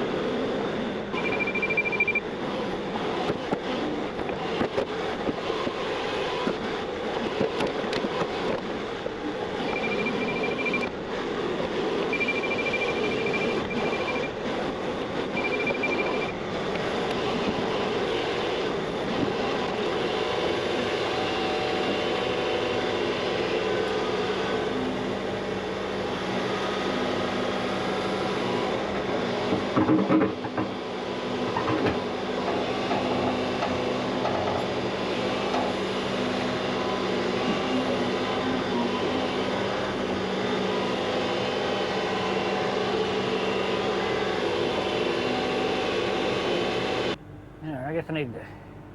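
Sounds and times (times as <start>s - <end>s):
excavator engine and hydraulics: 0.0s - 48.9s
short high beeps: 1.2s - 2.2s, 9.6s - 10.9s, 12.1s - 14.4s, 15.4s - 16.4s.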